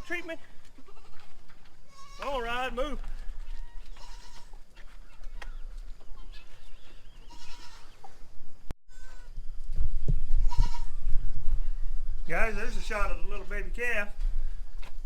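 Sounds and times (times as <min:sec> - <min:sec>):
goats bleating: 0:00.0 - 0:04.6, 0:07.2 - 0:08.0.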